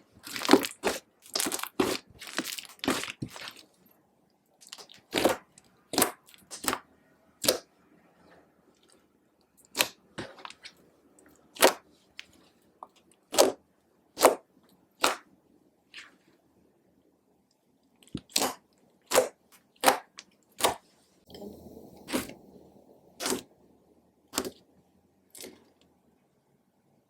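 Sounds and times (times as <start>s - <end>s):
sticky slime pops and clicks: 15.0s - 15.3s.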